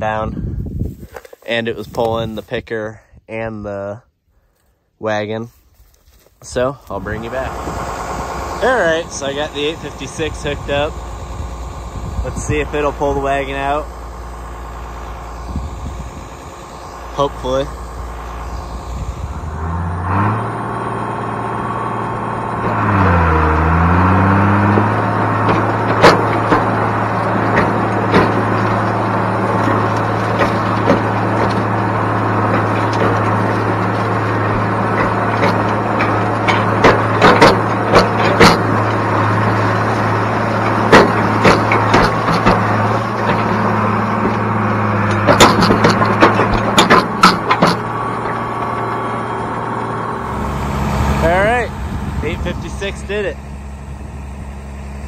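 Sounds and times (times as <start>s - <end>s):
tractor engine revving under load: 6.8s - 55.0s
sharp metallic knocks and clanks: 20.4s - 50.4s.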